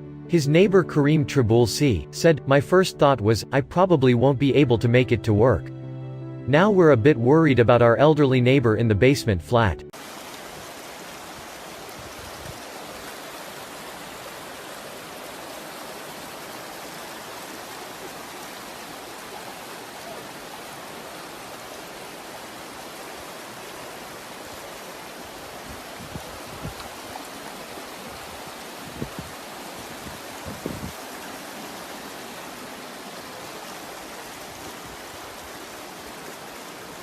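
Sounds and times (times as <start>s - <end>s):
floodwater rushing: 9.9s - 37.0s.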